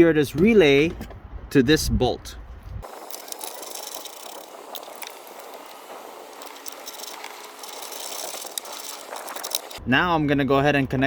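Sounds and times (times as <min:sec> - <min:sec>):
hand tools clicking and rattling: 0:02.8 - 0:09.8
steady hiss: 0:02.8 - 0:09.8.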